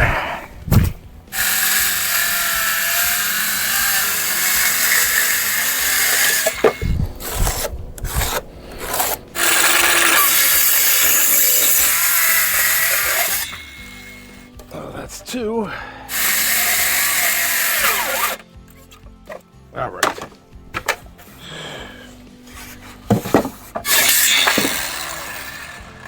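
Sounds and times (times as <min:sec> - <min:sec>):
power tool cutting wood: 0:01.3 - 0:14.6, 0:16.1 - 0:18.4, 0:23.3 - 0:26.0.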